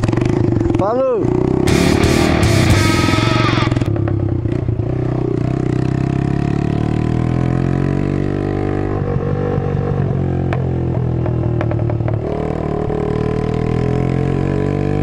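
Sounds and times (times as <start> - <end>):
motorcycle engine running: 0.0 - 8.0
loud noisy sound: 1.7 - 4.1.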